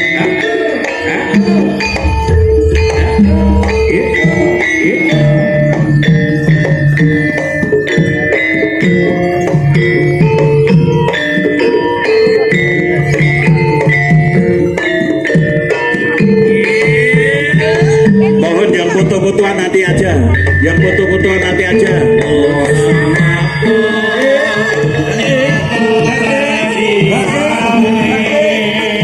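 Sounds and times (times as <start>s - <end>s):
ringing metal percussion: 0.0s - 29.0s
hand drum strokes: 1.4s - 5.8s.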